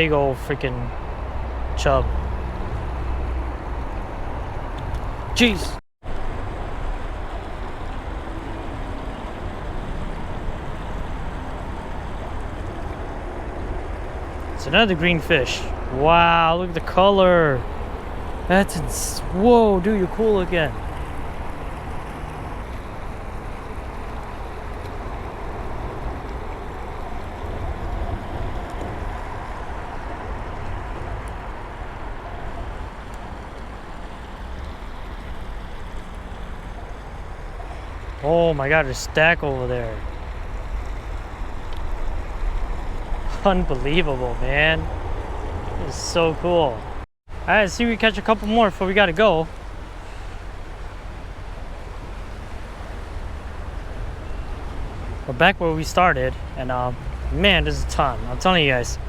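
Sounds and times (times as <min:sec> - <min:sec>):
creek water rushing: 0:00.0 - 0:59.0.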